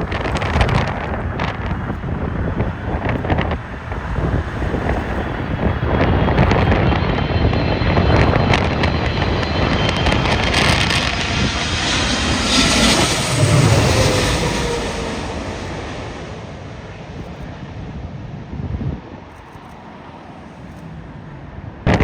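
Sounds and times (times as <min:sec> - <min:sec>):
jet airliner engine whine: 0:00.0 - 0:22.0
wind rumbling on microphone: 0:00.0 - 0:22.0.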